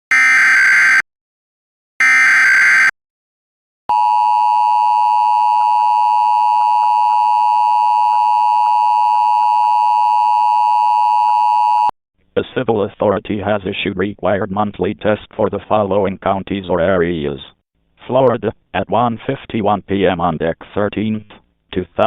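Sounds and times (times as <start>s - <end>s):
steady two-tone alert signal: 0.1s - 1.0s, 2.0s - 2.9s.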